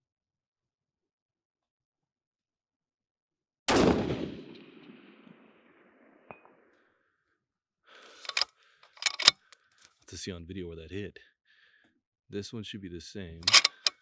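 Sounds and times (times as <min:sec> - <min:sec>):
rifle shot: 0:03.7 - 0:05.6, 0:13.4 - 0:13.9
sharp clicks: 0:08.2 - 0:09.5, 0:13.4 - 0:13.9.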